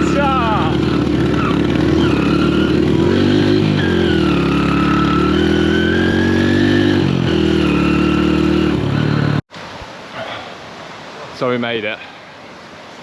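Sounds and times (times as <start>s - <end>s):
motorcycle engine revving: 0.0s - 9.4s.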